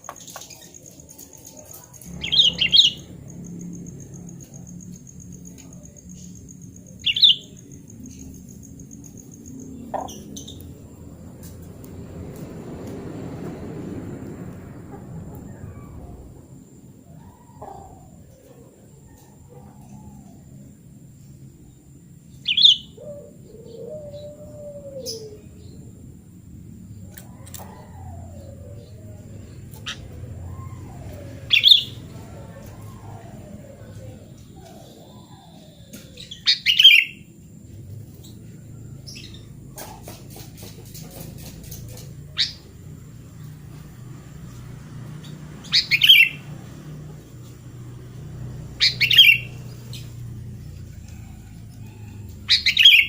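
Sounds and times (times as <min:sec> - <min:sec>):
bird chirping: 0:00.0 - 0:11.8, 0:14.6 - 0:25.9, 0:26.8 - 0:53.0
bulbul singing: 0:00.0 - 0:11.8, 0:21.6 - 0:25.9, 0:26.9 - 0:40.0, 0:41.9 - 0:43.8, 0:44.4 - 0:53.0
bird gliding calls: 0:27.2 - 0:37.2, 0:45.6 - 0:46.6, 0:48.8 - 0:53.0.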